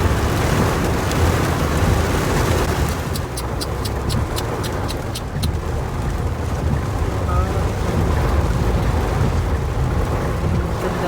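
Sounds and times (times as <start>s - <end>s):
moving vehicle rumble: 0.0s - 11.0s
road noise: 0.0s - 11.0s.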